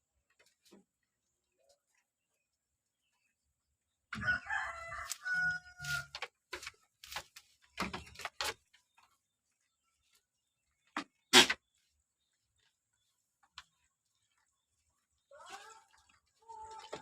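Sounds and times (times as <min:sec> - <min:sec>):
rooster crowing: 0:04.2 - 0:06.2.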